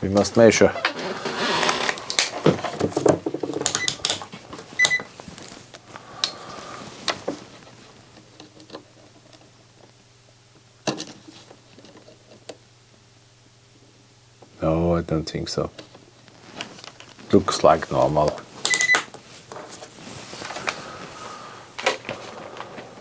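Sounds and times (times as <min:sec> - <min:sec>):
multimeter probes clicking: 0:18.3 - 0:19.1.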